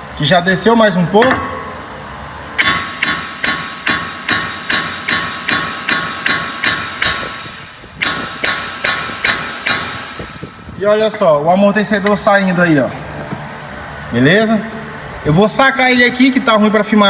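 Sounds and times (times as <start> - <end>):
sledgehammer striking metal: 1.2 - 1.8, 2.6 - 10.6.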